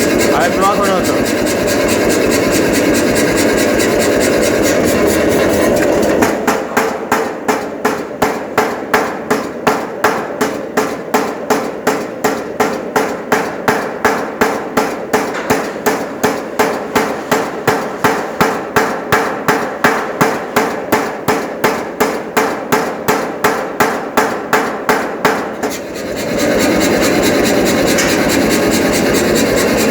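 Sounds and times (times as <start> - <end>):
hammer motor running: 0.0 - 6.5, 25.6 - 29.9.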